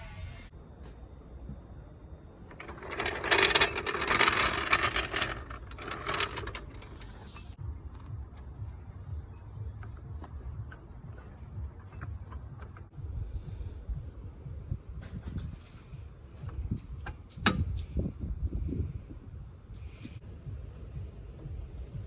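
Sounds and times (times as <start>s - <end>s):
metallic rattling and clicking: 2.5s - 7.6s.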